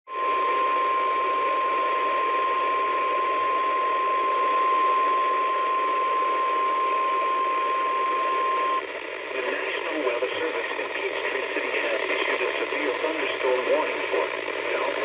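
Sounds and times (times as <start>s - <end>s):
radio static: 0.1s - 15.0s
steady alarm beep: 0.6s - 8.8s.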